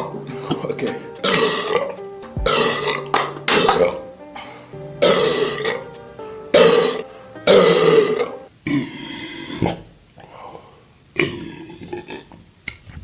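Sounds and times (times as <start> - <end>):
background music: 0.0 - 8.5
person burping loudly: 6.6 - 9.8, 11.2 - 12.4.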